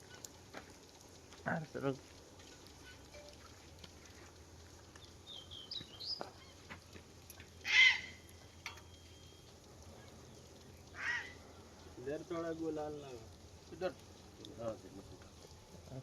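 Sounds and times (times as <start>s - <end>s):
high rising bird chirps: 5.2s - 6.6s
harsh bird call: 7.6s - 8.2s.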